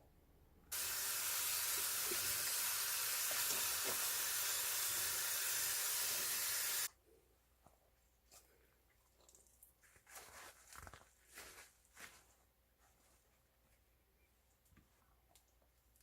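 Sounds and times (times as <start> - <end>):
kitchen tap running: 0.7 - 6.9.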